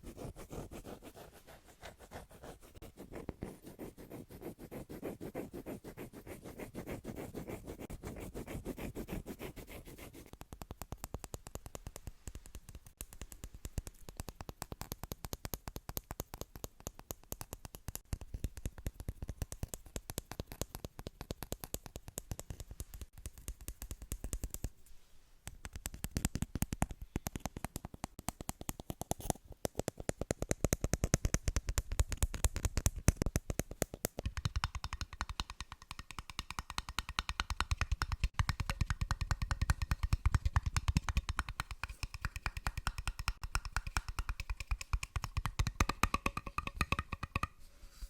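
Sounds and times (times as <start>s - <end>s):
fingers tapping and clicking: 10.2s - 24.7s, 25.5s - 47.6s.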